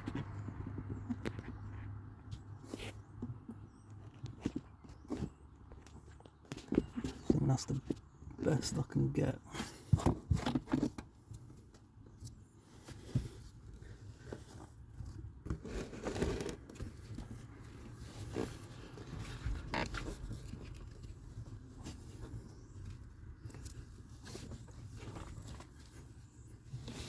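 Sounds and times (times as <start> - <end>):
hands scraping and rustling things: 0.0 - 27.0.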